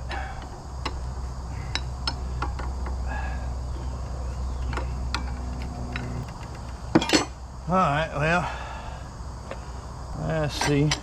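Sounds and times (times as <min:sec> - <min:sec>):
steady low hum: 0:00.0 - 0:11.0
tools tapping metal parts: 0:01.6 - 0:03.0, 0:10.5 - 0:11.0.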